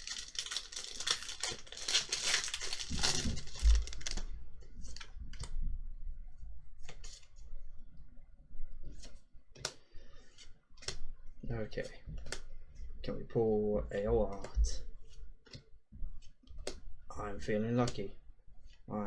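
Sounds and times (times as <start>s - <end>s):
packaging crinkling and rustling: 0.0s - 5.2s.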